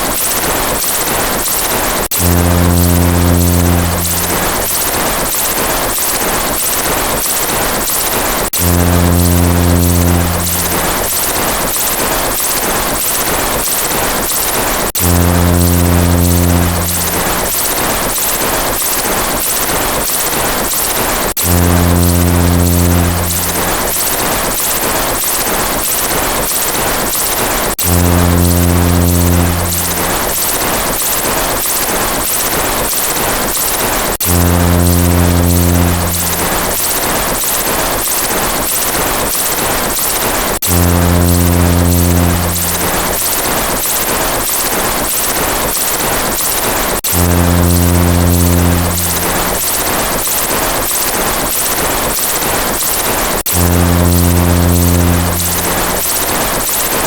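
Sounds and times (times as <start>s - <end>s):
rapid synthetic chopping noise: 0.0s - 57.0s
low buzzing tone: 2.1s - 5.2s, 8.6s - 11.7s, 15.0s - 17.9s, 21.4s - 24.5s, 27.8s - 30.8s, 34.2s - 37.3s, 40.6s - 43.7s, 47.0s - 50.2s, 53.5s - 56.7s.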